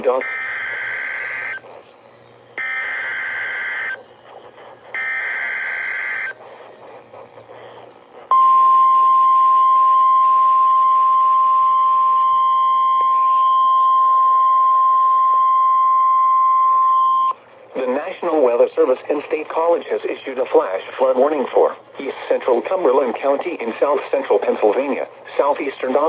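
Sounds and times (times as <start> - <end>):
buzzing digital data tones: 0.0 - 6.4, 8.3 - 17.4.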